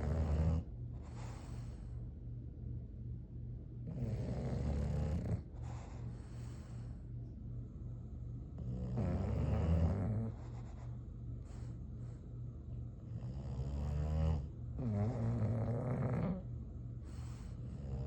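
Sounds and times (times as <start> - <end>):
dog snoring: 0.0 - 1.8, 3.8 - 6.9, 8.5 - 12.2, 13.0 - 18.0
dog breathing softly: 0.0 - 2.4, 3.9 - 18.0.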